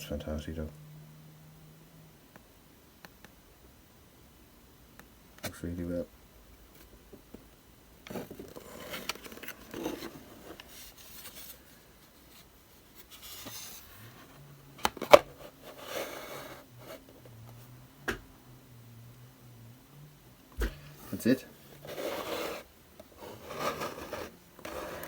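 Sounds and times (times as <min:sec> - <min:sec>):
packaging rustling and scraping: 0:08.1 - 0:17.3, 0:21.1 - 0:25.0.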